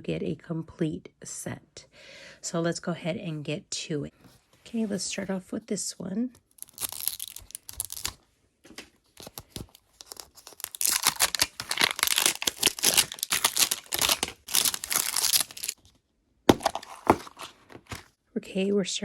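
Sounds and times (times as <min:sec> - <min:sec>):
packaging tearing and rustling: 0:06.5 - 0:08.2, 0:09.1 - 0:15.8, 0:16.5 - 0:18.1.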